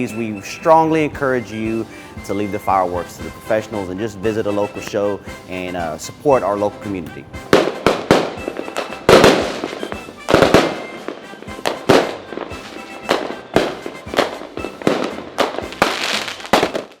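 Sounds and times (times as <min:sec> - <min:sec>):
fireworks banging and crackling: 0:07.2 - 0:17.0.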